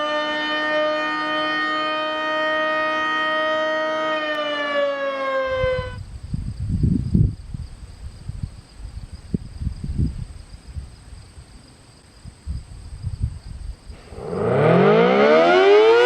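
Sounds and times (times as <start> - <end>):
warning siren wailing: 0.0 - 6.0, 14.0 - 16.0
low rumbling gusts: 5.4 - 11.6, 12.2 - 16.0.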